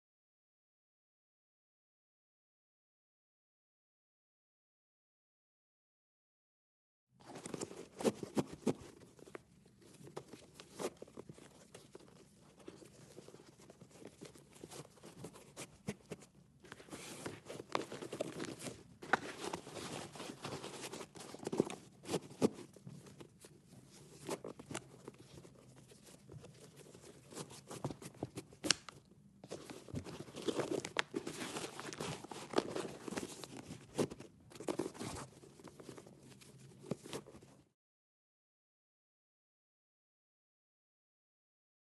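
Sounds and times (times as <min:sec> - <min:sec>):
shoelaces rustling and scraping: 0:07.2 - 0:37.7.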